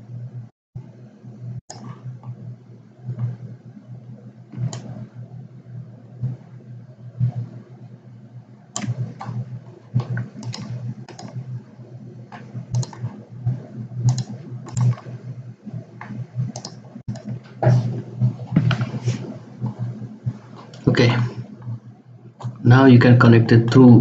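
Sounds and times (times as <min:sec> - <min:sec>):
low hum: 0:00.0 - 0:24.0
mouse and keyboard clicks: 0:08.8 - 0:09.4, 0:10.0 - 0:11.4, 0:12.4 - 0:13.2, 0:14.1 - 0:15.1, 0:16.0 - 0:17.4.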